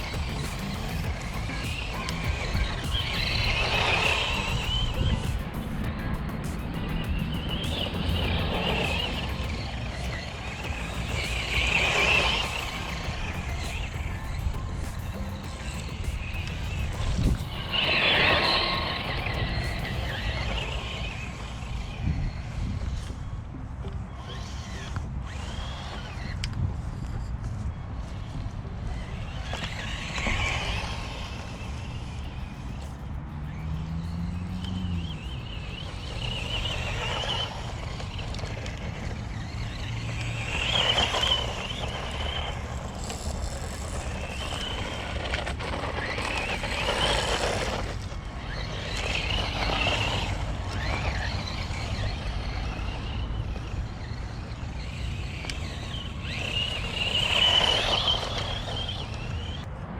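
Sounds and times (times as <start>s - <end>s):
steady low rumble: 0.0s - 23.8s
electric motor whining in surges: 0.0s - 59.8s.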